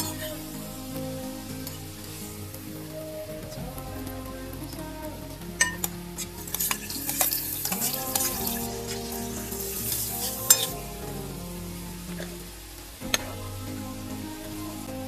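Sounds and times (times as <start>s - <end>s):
shrimp sizzling in a pan: 5.6s - 15.0s
utensil scraping and clacking on pan: 6.4s - 9.0s.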